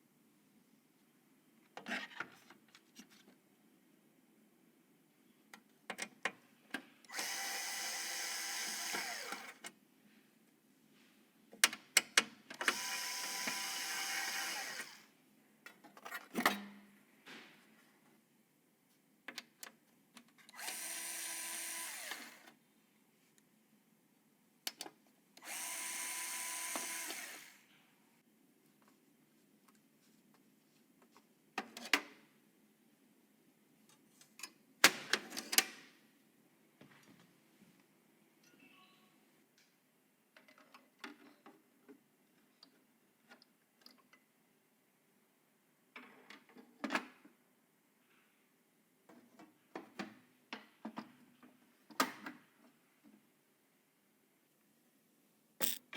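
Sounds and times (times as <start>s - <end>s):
electric screwdriver motor whir: 7.1s - 9.6s, 12.6s - 15.1s, 20.6s - 22.5s, 25.4s - 27.6s.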